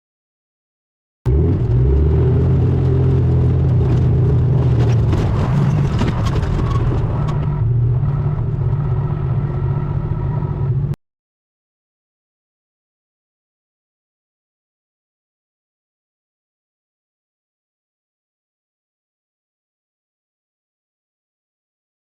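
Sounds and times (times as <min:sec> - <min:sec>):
vehicle engine running: 0:01.3 - 0:11.0.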